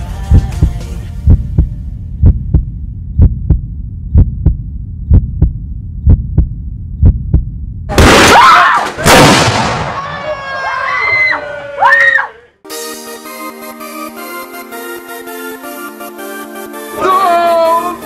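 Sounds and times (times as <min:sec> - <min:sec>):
low heartbeat-like thumps: 0:00.1 - 0:07.9
low hum: 0:00.4 - 0:07.9
loud explosion blast: 0:07.9 - 0:08.4, 0:09.0 - 0:10.1.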